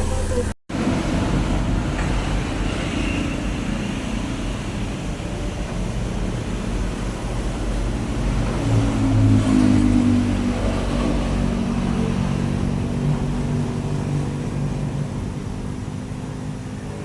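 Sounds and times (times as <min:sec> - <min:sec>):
pickup engine running: 0:00.0 - 0:08.6.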